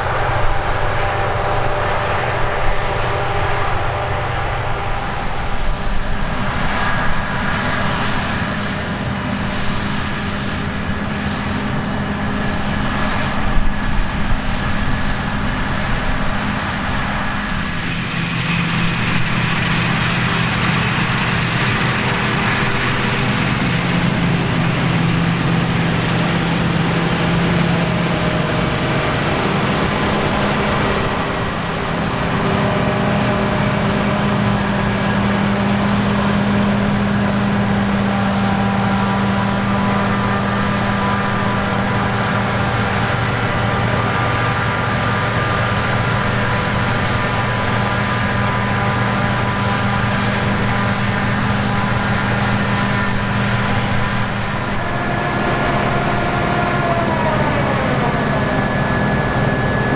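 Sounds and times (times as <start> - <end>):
diesel machinery running: 0.0 - 59.9.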